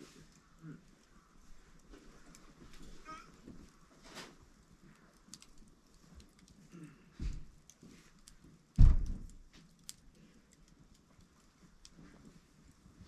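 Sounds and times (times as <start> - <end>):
campfire crackling: 0.0 - 13.0
dull thumps: 8.8 - 9.3.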